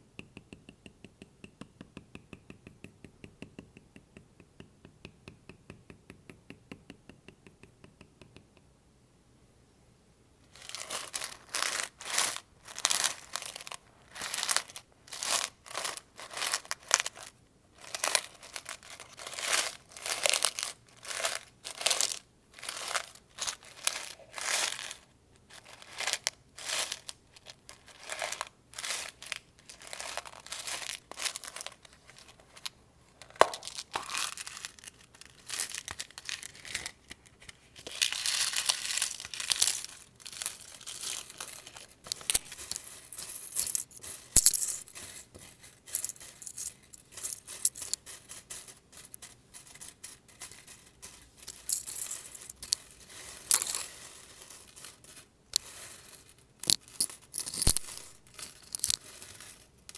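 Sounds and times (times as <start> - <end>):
rustling scratching: 10.6 - 59.9
paper clips clicking and jingling: 45.9 - 48.0, 50.6 - 59.9.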